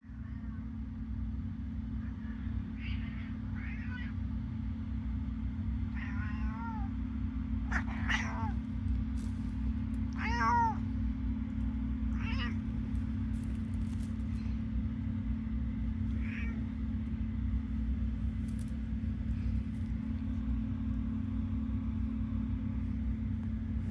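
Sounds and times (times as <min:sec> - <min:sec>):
steady low hum: 0:00.0 - 0:23.9
cat meowing loudly: 0:05.9 - 0:06.9, 0:07.7 - 0:08.7, 0:10.1 - 0:10.9, 0:12.1 - 0:12.8, 0:16.0 - 0:16.7.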